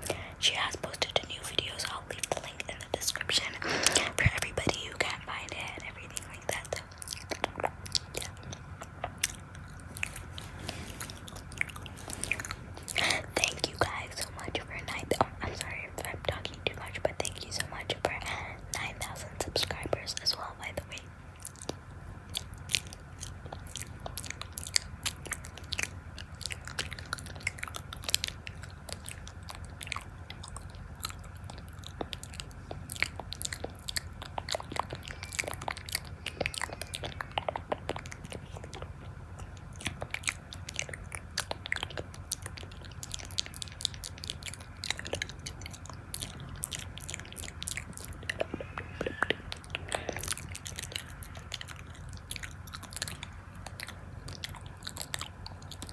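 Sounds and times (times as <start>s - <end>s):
biting and chewing: 0.0s - 55.9s
mouth clicks: 21.5s - 55.9s.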